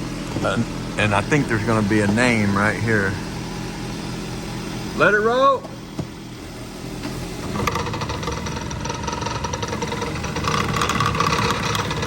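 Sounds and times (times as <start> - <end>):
car engine running: 0.0 - 12.0
rapid mechanical knocking: 7.5 - 12.0.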